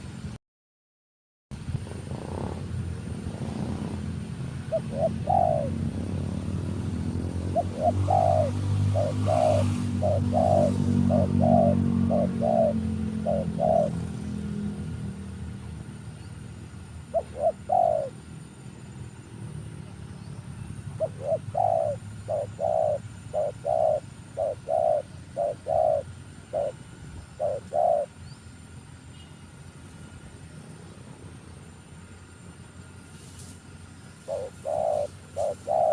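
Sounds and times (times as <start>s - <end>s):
dove cooing: 2.0s - 14.8s, 17.0s - 18.3s, 20.8s - 28.4s, 34.2s - 35.9s.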